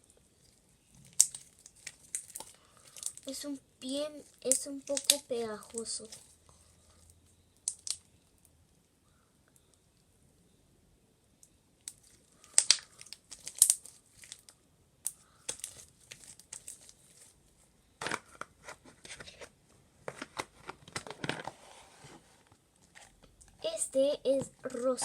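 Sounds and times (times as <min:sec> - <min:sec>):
slime crackling and clicking: 0:01.0 - 0:03.4, 0:04.4 - 0:06.3, 0:07.6 - 0:08.1, 0:11.8 - 0:16.9.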